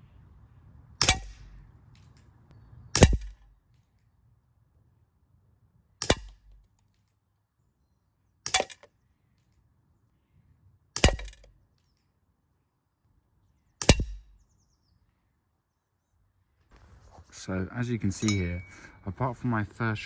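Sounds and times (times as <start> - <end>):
pellet revolver shots: 1.0 - 1.6, 3.0 - 3.5, 6.0 - 6.6, 11.0 - 11.5, 13.8 - 14.4.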